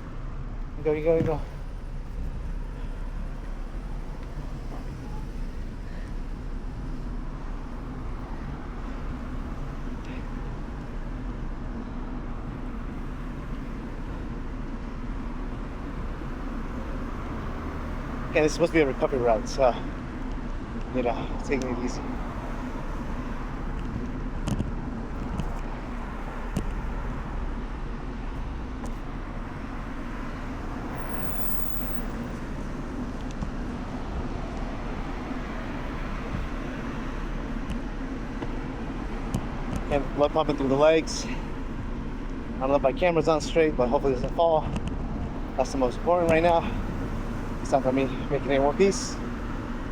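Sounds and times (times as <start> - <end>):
road rumble: 0.0 - 49.9
wind: 0.0 - 49.9
wind rush on microphone: 32.2 - 39.9.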